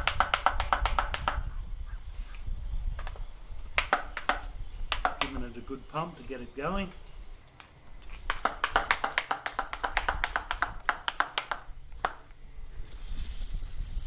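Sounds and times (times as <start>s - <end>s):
sprayer nozzle hiss: 11.3s - 14.0s.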